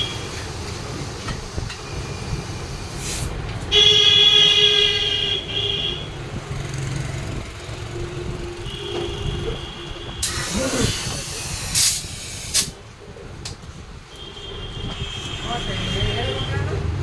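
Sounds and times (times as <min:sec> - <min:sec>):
street traffic noise: 0:00.0 - 0:17.0
short hiss: 0:03.0 - 0:03.3, 0:10.2 - 0:12.8
vehicle horn: 0:03.7 - 0:06.2, 0:08.6 - 0:10.9, 0:14.1 - 0:16.7.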